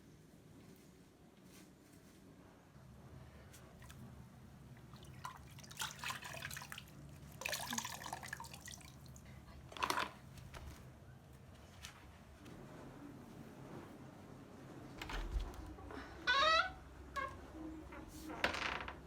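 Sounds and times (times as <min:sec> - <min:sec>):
water splashing and dripping: 0:04.8 - 0:09.2.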